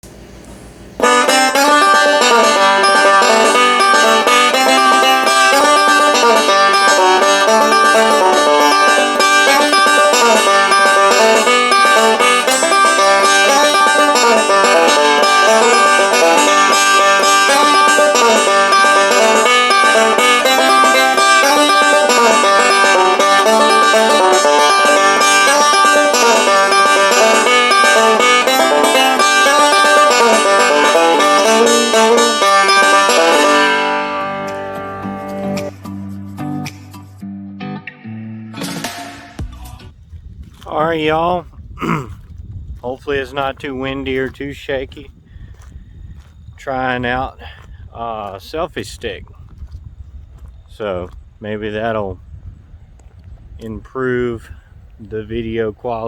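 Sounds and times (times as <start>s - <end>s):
banjo-led bluegrass music: 1.0s - 35.8s.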